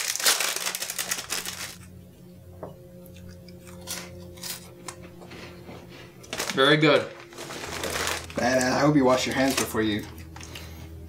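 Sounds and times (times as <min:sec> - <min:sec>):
cracker crunching: 0:00.0 - 0:01.9, 0:03.2 - 0:05.1, 0:06.2 - 0:10.9
steady low hum: 0:01.0 - 0:11.0.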